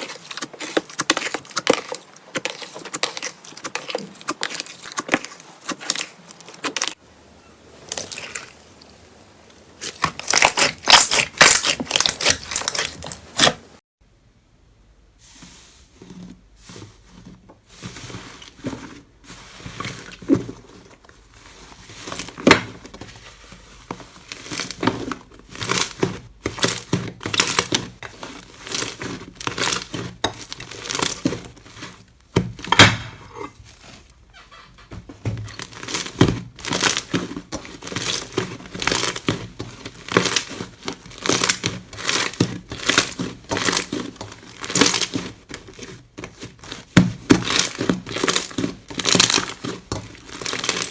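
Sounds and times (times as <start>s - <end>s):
slime crackling and popping: 9.8s - 13.6s, 35.4s - 50.9s.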